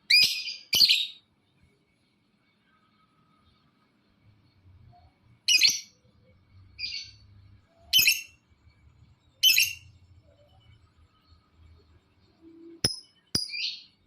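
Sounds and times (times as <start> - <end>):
lovebird harsh chirps: 5.5 - 6.0, 7.9 - 8.4, 9.4 - 10.0, 12.8 - 13.9.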